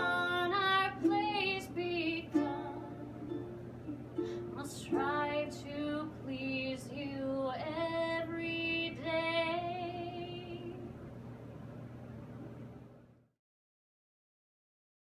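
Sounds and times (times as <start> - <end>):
woman singing folk song: 0.0 - 3.4, 4.2 - 11.0.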